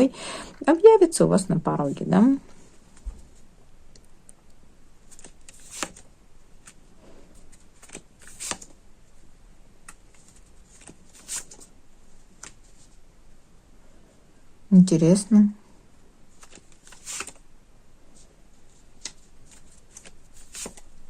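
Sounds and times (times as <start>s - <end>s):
cards rustling and snapping: 5.1s - 6.8s, 7.4s - 8.8s, 9.8s - 11.7s, 16.4s - 17.4s, 19.0s - 20.9s.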